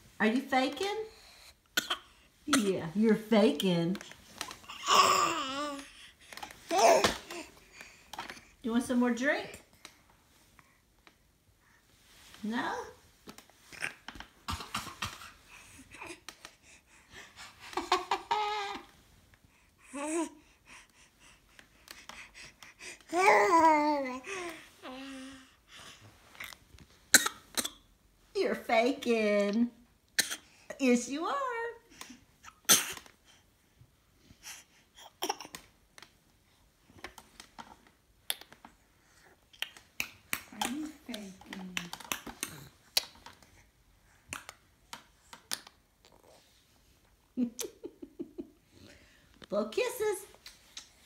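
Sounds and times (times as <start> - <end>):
toddler fake coughing: 1.8 - 2.7, 32.6 - 33.0
toddler silly vocal noises: 4.6 - 6.0, 23.1 - 25.5.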